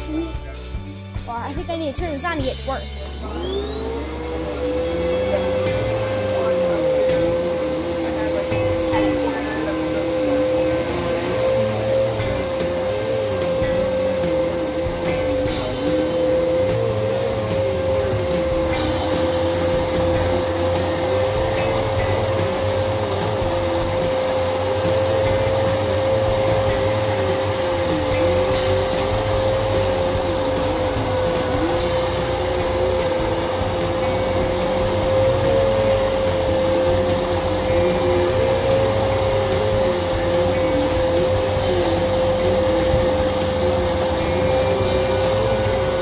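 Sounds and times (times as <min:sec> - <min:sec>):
vacuum cleaner whining: 0:02.8 - 0:46.0.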